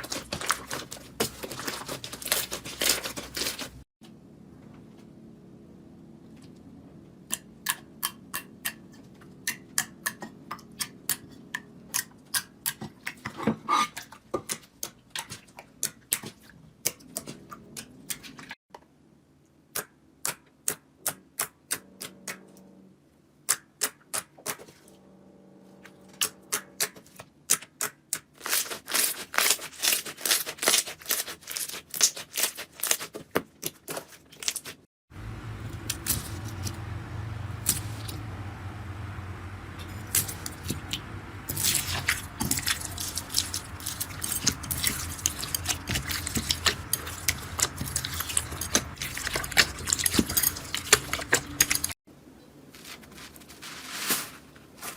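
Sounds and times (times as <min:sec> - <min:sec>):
slime popping and crackling: 0:41.5 - 0:51.9.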